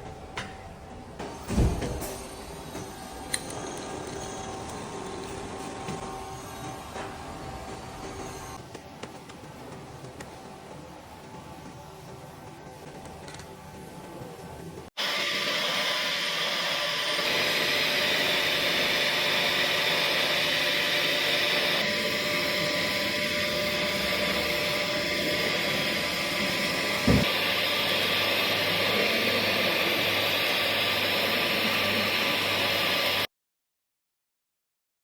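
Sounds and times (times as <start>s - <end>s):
welding equipment hissing and humming: 15.0s - 33.3s
short thump: 27.0s - 27.3s.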